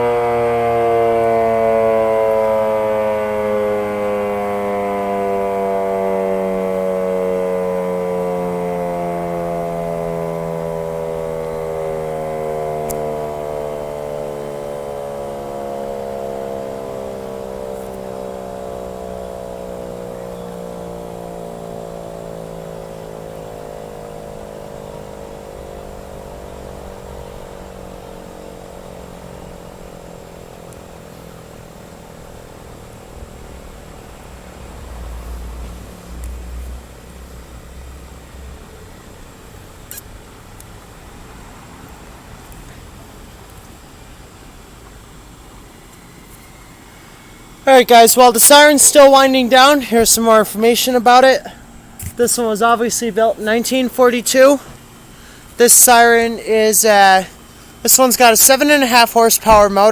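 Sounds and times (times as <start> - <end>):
electric siren winding down: 0.0 - 59.9.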